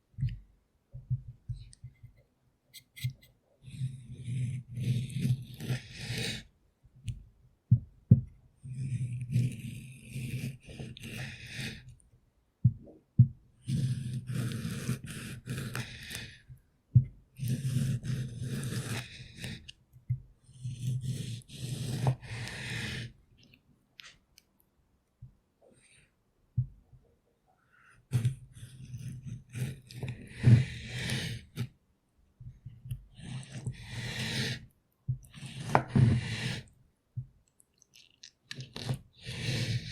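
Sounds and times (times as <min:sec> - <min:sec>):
knife slicing tomatoes: 0:08.6 - 0:11.8, 0:13.7 - 0:16.3, 0:17.4 - 0:19.8, 0:20.5 - 0:23.0, 0:38.5 - 0:39.9.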